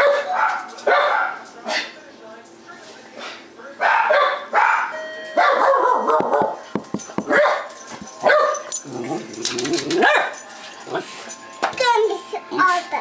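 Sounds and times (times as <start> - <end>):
dog barking: 0.0 - 1.9, 3.8 - 6.6, 7.3 - 8.7, 10.0 - 10.4.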